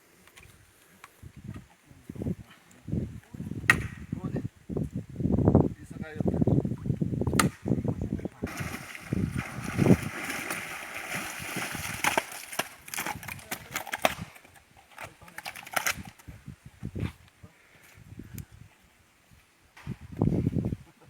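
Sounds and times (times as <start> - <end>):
water splashing in river: 8.5 - 13.2.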